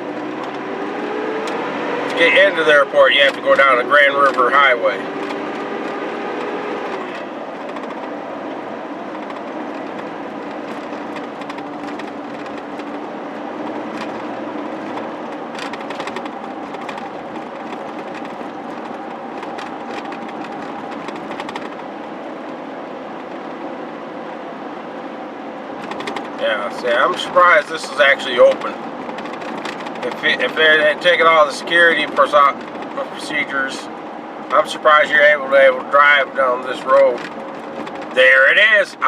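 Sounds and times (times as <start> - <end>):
road and tyre noise: 0.0 - 39.0
clicks and rattles: 6.8 - 8.1, 9.1 - 21.8, 25.8 - 26.4, 28.4 - 30.5, 36.8 - 38.2.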